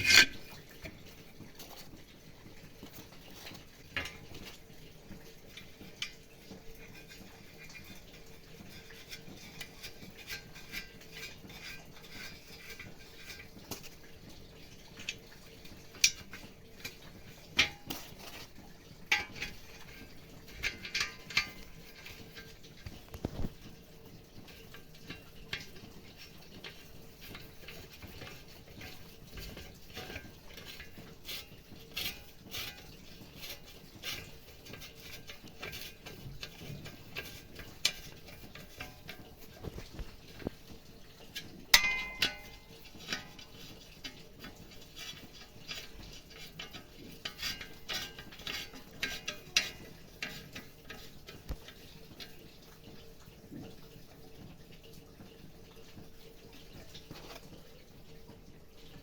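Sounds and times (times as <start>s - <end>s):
metal tools clinking: 41.8s - 42.7s.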